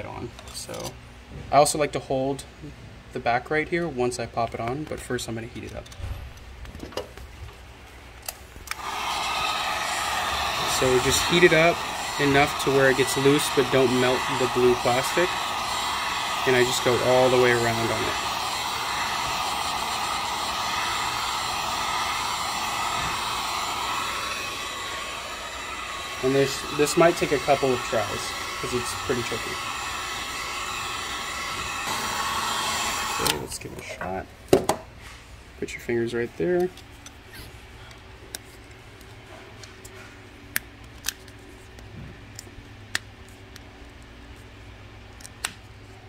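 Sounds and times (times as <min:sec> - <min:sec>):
heat gun fan whooshing: 0:08.2 - 0:34.0.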